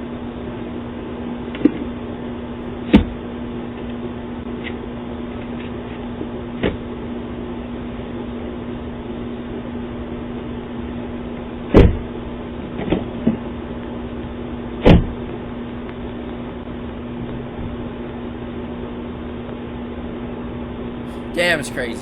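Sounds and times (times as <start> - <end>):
low hum and hiss: 20.9 - 22.0.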